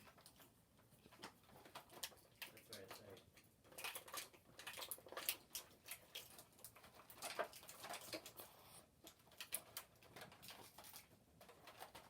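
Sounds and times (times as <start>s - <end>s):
plastic packaging rustling: 9.2s - 12.0s.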